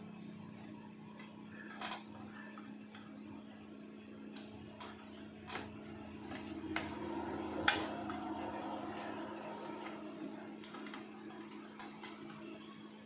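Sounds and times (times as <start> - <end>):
low electrical hum: 0.0 - 13.0
small parts and tools clicking: 1.2 - 2.3.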